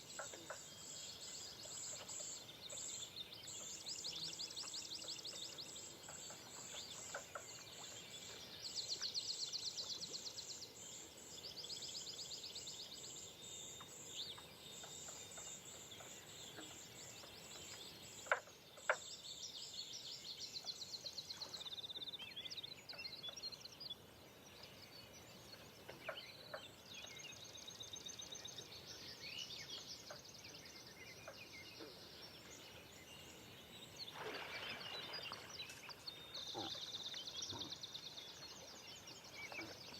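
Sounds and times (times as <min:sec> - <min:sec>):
faint steady hiss: 0:00.0 - 0:39.9
birds trilling and chirping: 0:25.0 - 0:39.9.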